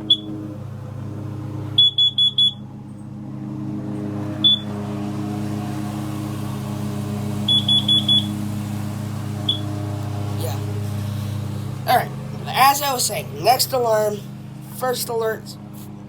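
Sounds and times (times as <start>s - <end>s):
steady low hum: 0.0s - 16.0s
alarm high-pitched beeps: 1.8s - 2.6s, 7.5s - 8.3s.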